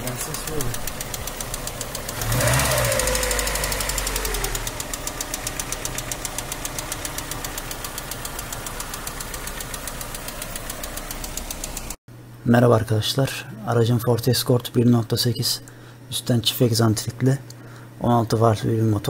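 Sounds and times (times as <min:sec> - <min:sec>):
car engine idling and revving: 0:00.0 - 0:12.0
metallic tappet ticking: 0:00.0 - 0:12.0.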